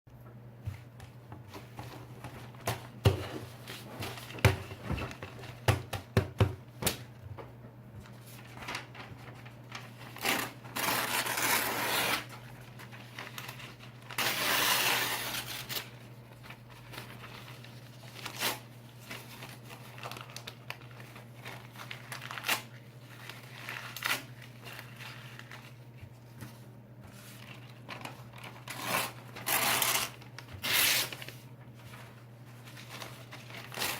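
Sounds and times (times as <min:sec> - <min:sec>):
paper crinkling: 0:08.0 - 0:33.9
paper ripping: 0:08.4 - 0:15.9, 0:27.4 - 0:32.1, 0:32.7 - 0:33.9.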